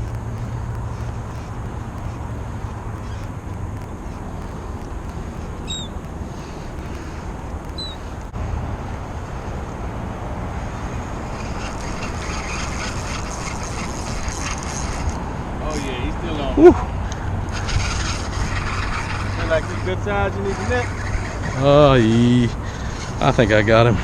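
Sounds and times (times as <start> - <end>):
faint scratchy clicking: 0.0 - 8.4
outdoor rumble and hiss: 0.0 - 24.0
short high chirps: 5.6 - 6.0.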